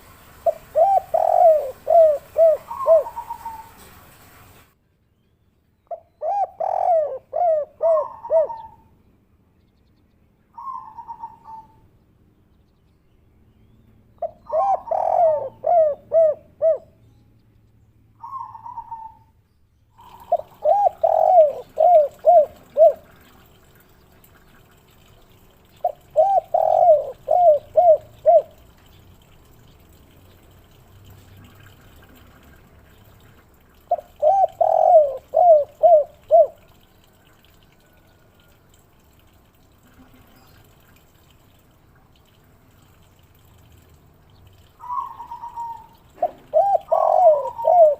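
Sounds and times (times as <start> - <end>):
dove cooing: 0.4 - 3.8, 5.9 - 8.9, 10.6 - 11.8, 14.2 - 17.0, 18.2 - 19.3, 20.0 - 23.5, 25.8 - 28.6, 33.9 - 36.8, 44.8 - 47.9.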